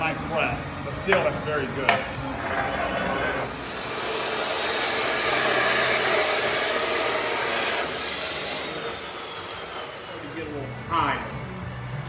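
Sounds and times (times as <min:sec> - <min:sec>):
welding arc sizzling and crackling: 0:03.2 - 0:10.4.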